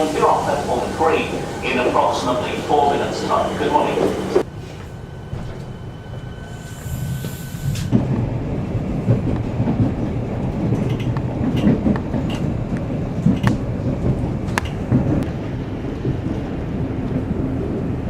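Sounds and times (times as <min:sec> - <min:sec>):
steady high whine: 0:00.0 - 0:07.9
electric train rumbling: 0:00.0 - 0:18.0.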